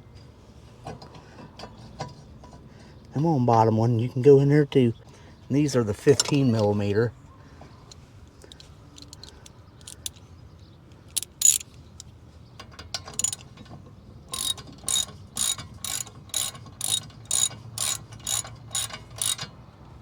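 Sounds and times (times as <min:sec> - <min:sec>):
ratchet wrench clicking: 0:09.0 - 0:10.2, 0:11.1 - 0:12.1, 0:13.1 - 0:13.6, 0:14.3 - 0:19.5.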